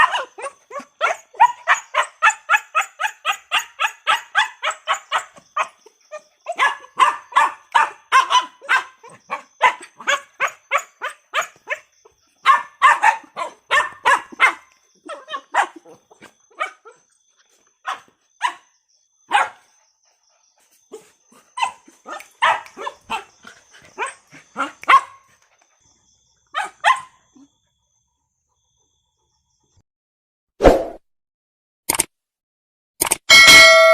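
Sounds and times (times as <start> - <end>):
dog barking: 0.0 - 17.0, 17.8 - 18.7, 19.3 - 19.8, 20.9 - 25.3, 26.5 - 27.5.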